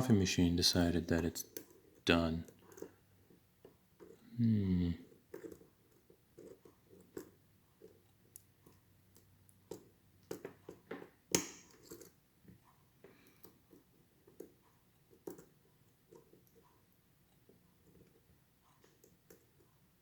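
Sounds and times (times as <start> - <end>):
lock pick clicks and scrapes: 5.3 - 12.2.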